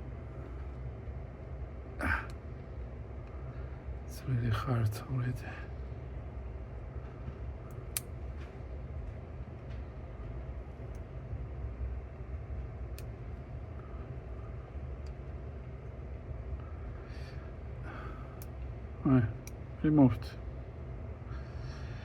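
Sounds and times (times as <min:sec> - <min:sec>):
low background hum: 0:00.0 - 0:22.0
faint light clicks: 0:07.7 - 0:08.6, 0:18.4 - 0:18.7.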